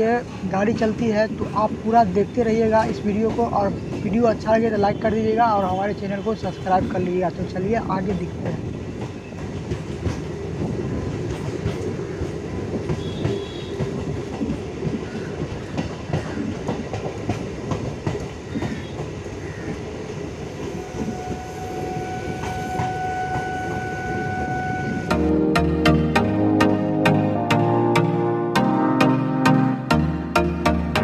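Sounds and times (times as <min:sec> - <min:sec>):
train rumbling on track: 0:00.0 - 0:28.4
wheels clacking over rail joints: 0:00.8 - 0:25.1
steady high tone: 0:20.6 - 0:31.0.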